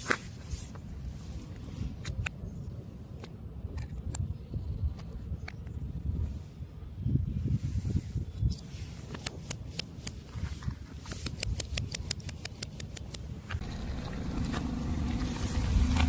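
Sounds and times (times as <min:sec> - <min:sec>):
car engine running: 0:13.6 - 0:16.0.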